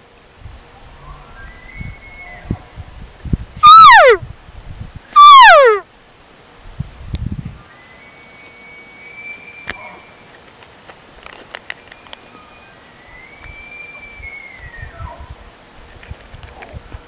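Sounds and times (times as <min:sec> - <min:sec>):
elk bugling: 0:03.6 - 0:04.2, 0:05.2 - 0:05.8.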